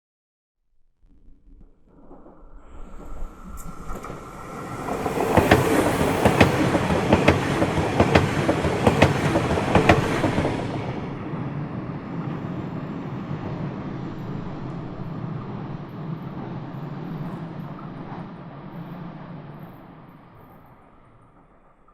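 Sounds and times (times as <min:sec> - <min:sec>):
train rumble: 0:02.0 - 0:21.9
wheels clacking over rail joints: 0:03.6 - 0:11.0.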